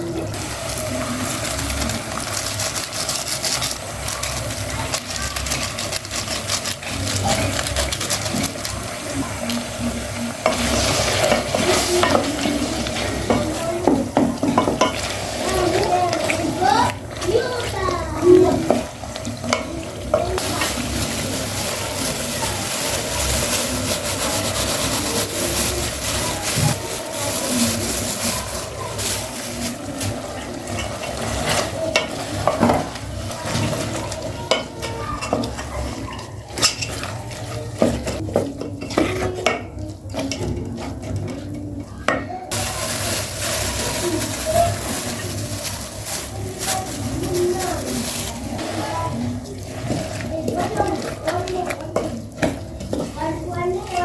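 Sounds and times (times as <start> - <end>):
food sizzling in a pot: 0.0 - 34.7, 42.5 - 49.2
utensil clinking against pot: 10.4 - 17.2, 34.5 - 43.1.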